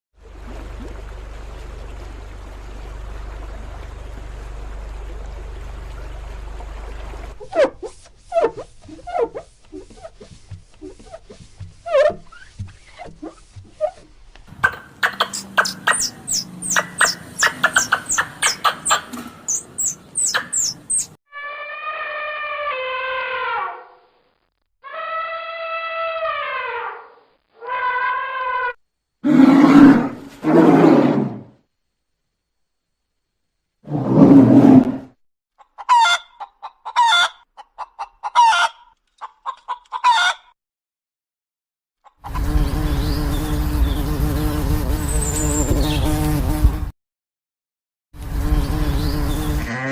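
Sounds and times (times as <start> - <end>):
chickens clucking and cackling: 14.5 - 21.1, 35.6 - 40.6, 42.0 - 42.5
high downward-sweeping animal chirps: 14.6 - 23.9
long evenly pitched animal call: 14.7 - 24.0, 24.8 - 30.2.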